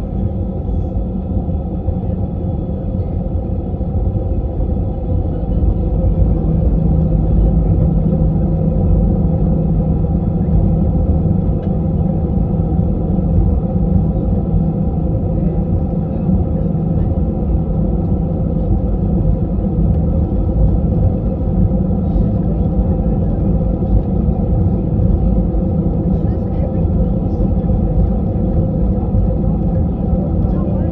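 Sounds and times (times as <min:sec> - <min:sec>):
constant cabin hum: 0:00.0 - 0:30.9
jet cabin rumble: 0:00.0 - 0:30.9.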